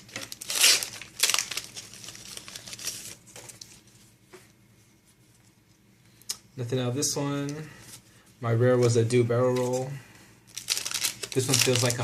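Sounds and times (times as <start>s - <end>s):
foil wrapper crinkling and tearing: 0.0s - 3.8s, 10.5s - 12.0s
cards rustling: 9.5s - 12.0s.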